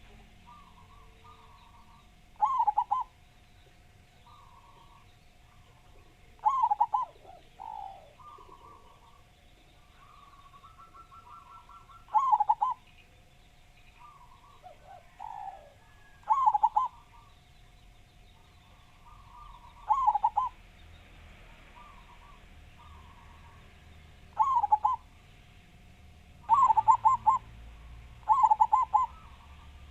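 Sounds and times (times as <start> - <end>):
dove cooing: 0.0 - 3.2, 4.2 - 12.9, 14.0 - 17.3, 18.8 - 20.6, 21.7 - 23.7, 24.3 - 25.1, 26.4 - 29.9
faint bird calls: 0.0 - 25.2, 26.4 - 29.9
faint steady tone: 0.0 - 29.9.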